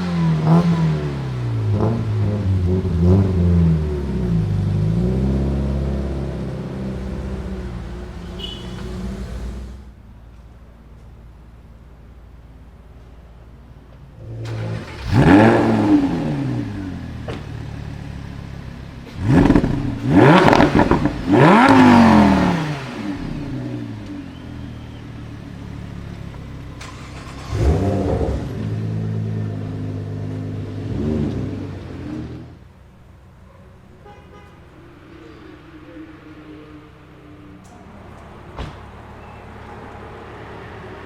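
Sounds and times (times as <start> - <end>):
sports car engine revving: 0.0 - 10.0, 14.1 - 33.4.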